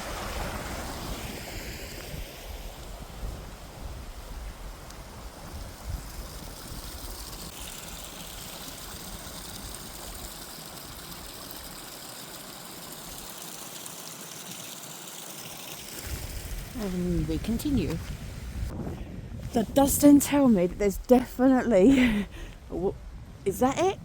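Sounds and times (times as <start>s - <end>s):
distant running water: 0.0s - 18.7s
wind buffeting microphone: 16.0s - 24.0s.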